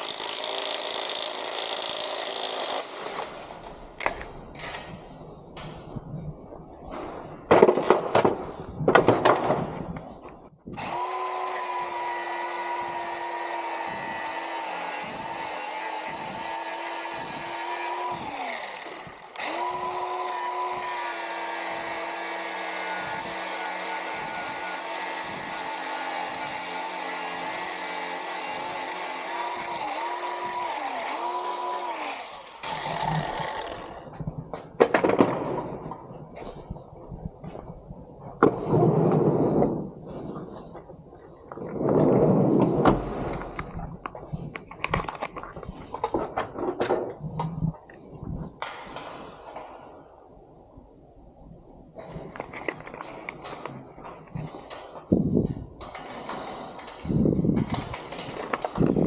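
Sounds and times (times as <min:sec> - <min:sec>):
power tool motor running: 0:10.8 - 0:34.0
metal rattling and scraping: 0:52.1 - 0:59.0.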